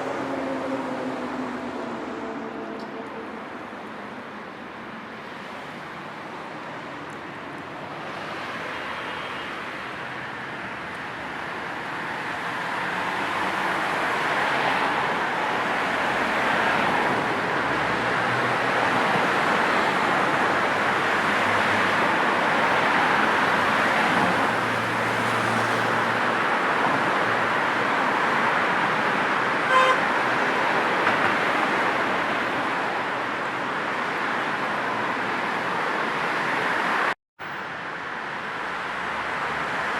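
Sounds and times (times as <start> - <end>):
passing cars and tyres: 0.0 - 39.9
car horn toot: 29.7 - 30.1.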